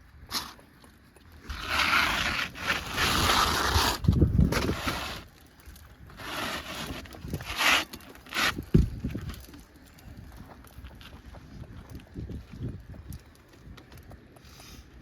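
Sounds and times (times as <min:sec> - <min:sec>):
shingle scraping against shingles: 0:01.4 - 0:09.5.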